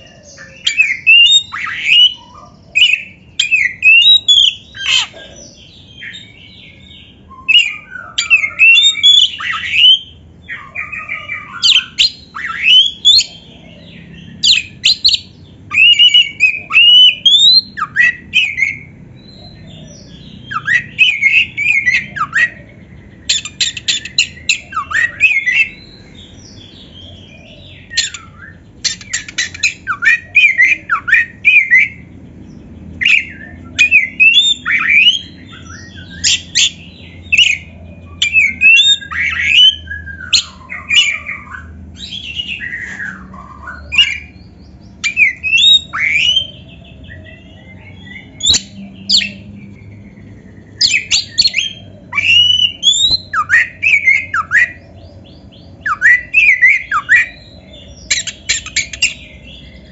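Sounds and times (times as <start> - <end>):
songbird whistling and rattling: 14.4 - 18.9, 23.3 - 25.9, 27.8 - 32.0, 33.0 - 44.3, 45.0 - 46.6, 47.9 - 54.9, 55.7 - 59.4.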